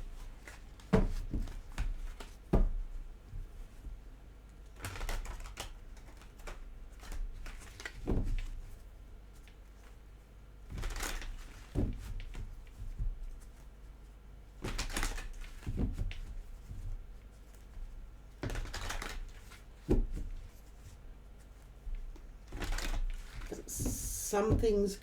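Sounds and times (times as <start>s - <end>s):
cards shuffling with rustling clicks: 4.7s - 8.2s, 10.7s - 12.4s, 18.4s - 20.2s
short thump: 23.6s - 25.0s.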